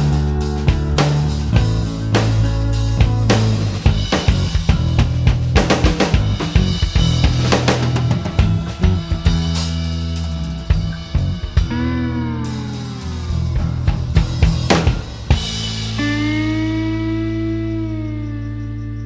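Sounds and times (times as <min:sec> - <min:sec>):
drums and guitar music: 0:00.0 - 0:18.0.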